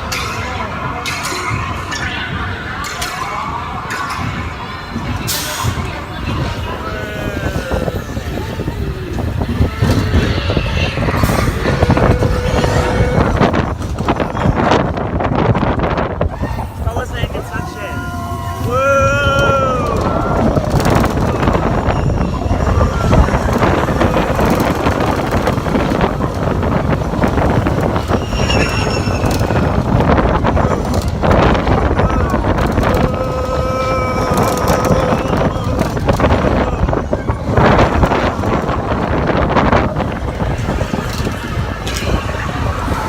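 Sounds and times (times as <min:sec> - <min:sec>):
roller coaster knocks: 0:00.0 - 0:43.0
roller coaster rumbling on track: 0:00.0 - 0:43.0
wind rushing over microphone: 0:00.0 - 0:43.0
faint high squeal: 0:27.5 - 0:31.0
held tone: 0:28.0 - 0:31.0.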